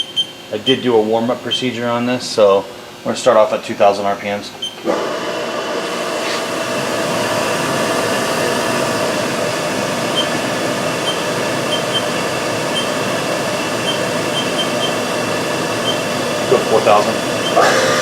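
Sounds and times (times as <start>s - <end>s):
machine spindle whirring: 4.6s - 18.0s.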